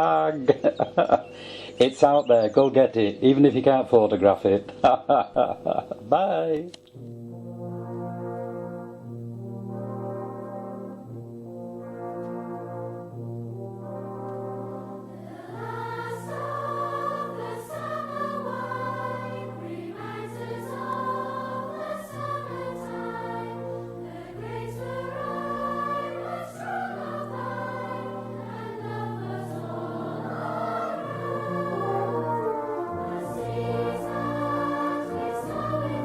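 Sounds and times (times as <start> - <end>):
slow choral music: 0.0 - 2.4, 4.6 - 6.2, 6.8 - 36.0.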